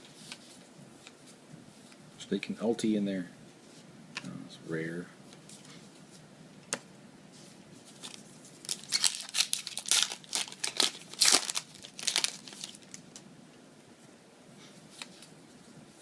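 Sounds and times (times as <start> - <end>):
foil wrapper tearing and crinkling: 8.0 - 13.0.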